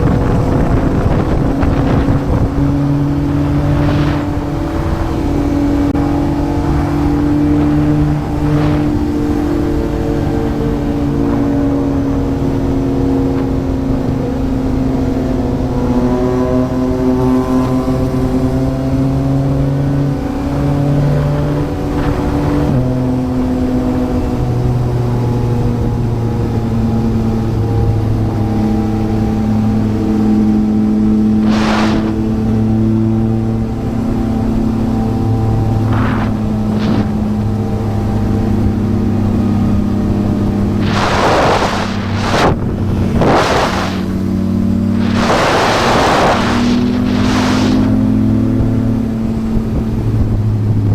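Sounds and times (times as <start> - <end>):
short rushes of noise: 3.2 - 5.9, 6.7 - 10.6, 31.4 - 32.4, 35.8 - 37.4, 40.7 - 48.3
motorcycle engine running: 33.1 - 50.9.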